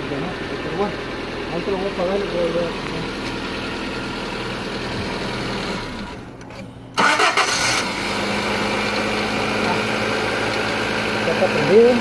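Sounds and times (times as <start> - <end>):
car engine idling: 0.0 - 12.0
engine cranking and restarting: 3.2 - 12.0.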